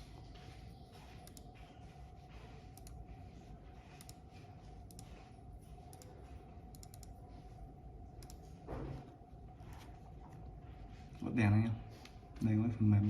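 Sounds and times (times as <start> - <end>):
faint steady hum: 0.0 - 13.0
computer mouse buttons clicking: 1.2 - 1.5, 2.7 - 3.0, 3.9 - 4.2, 4.8 - 5.2, 5.8 - 6.1, 6.7 - 7.2, 8.2 - 8.5.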